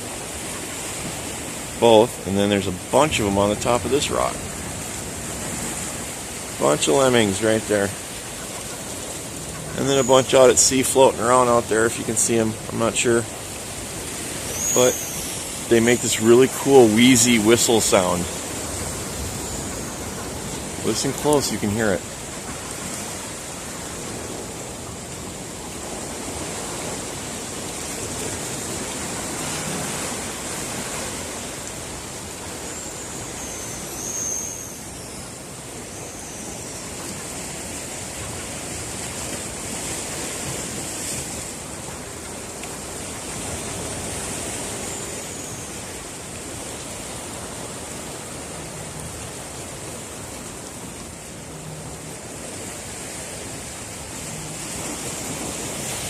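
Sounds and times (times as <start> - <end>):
sea surf: 0.0 - 56.0
wind: 0.0 - 56.0
seabird wheezy whistles: 14.4 - 16.0, 32.5 - 36.9, 44.7 - 46.0.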